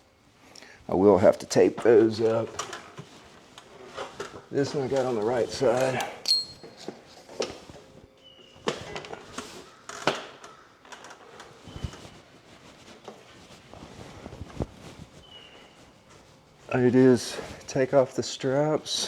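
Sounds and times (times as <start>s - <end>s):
straps and hooks being handled: 1.7s - 16.7s
metallic clink: 6.2s - 6.8s.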